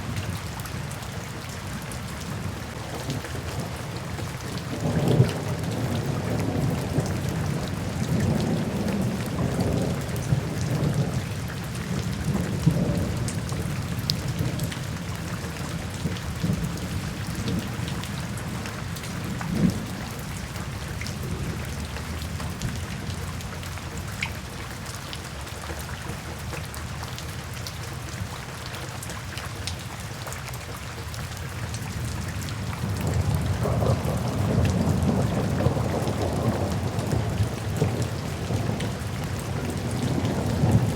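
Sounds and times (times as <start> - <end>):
steady rainfall: 0.0 - 40.9
low rumbling thunder: 3.4 - 23.4, 32.0 - 40.9.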